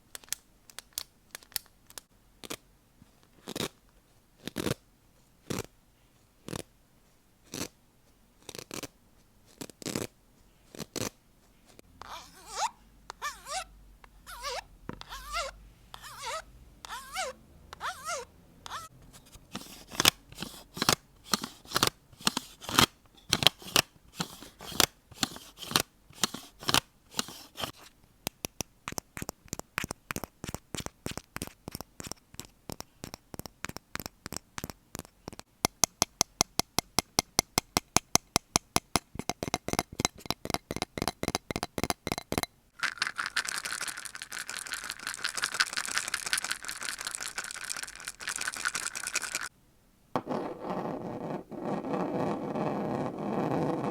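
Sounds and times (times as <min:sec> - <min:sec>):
continuous scratching: 0:14.3 - 0:28.0
sharp taps and clicks: 0:28.3 - 0:42.5
quick even tapping: 0:35.3 - 0:42.5.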